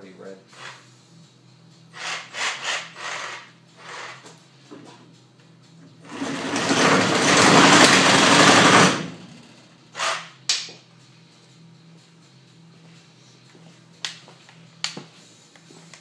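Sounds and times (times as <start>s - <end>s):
reciprocating saw cutting wood: 0.5s - 0.8s, 1.9s - 4.2s.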